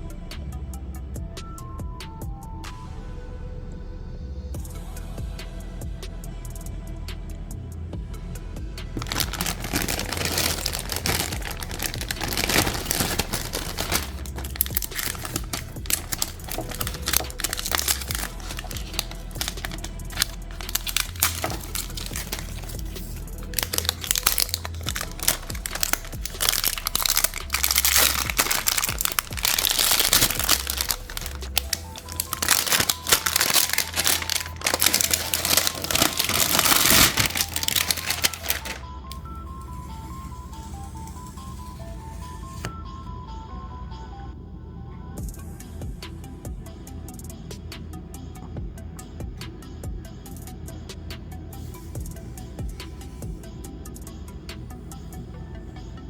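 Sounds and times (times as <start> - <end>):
background music: 0.0 - 56.0
packaging crinkling and rustling: 9.0 - 42.7.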